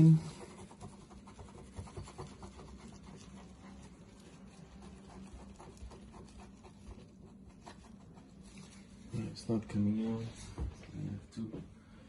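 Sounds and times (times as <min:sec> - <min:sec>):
scratchy rubbing of paste: 0:00.0 - 0:09.2
low steady hum: 0:00.0 - 0:12.0.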